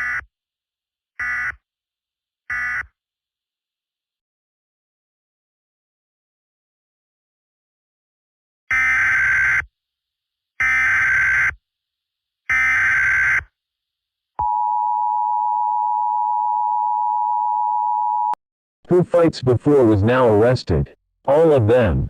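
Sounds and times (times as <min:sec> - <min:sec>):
steady attention tone: 0:14.4 - 0:19.7.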